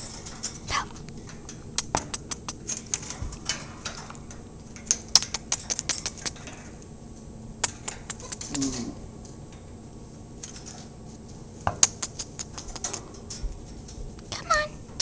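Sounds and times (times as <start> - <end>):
bird making sharp clicks: 1.8 - 3.0, 4.9 - 6.4, 7.6 - 8.6, 11.8 - 13.0.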